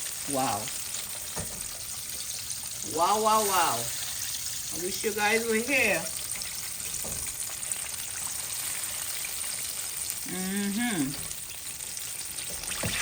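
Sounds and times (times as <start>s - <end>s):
chicken frying in hot oil: 0.0s - 13.0s
murmured exclamation: 10.3s - 11.2s.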